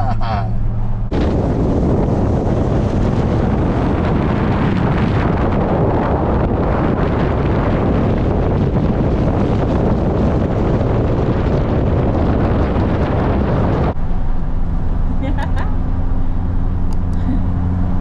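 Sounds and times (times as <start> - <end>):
steady low hum: 0.0 - 5.7
wind rushing over microphone: 0.0 - 18.0.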